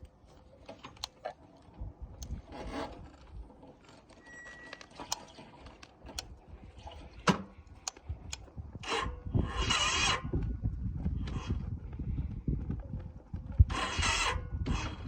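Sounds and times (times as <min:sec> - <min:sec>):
motorcycle engine cranking: 0:13.7 - 0:15.0.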